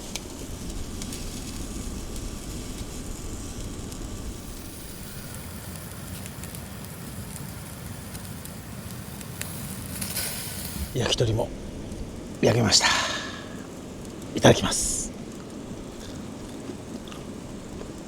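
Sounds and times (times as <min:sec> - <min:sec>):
skewers grilling over fire: 0:00.0 - 0:18.0.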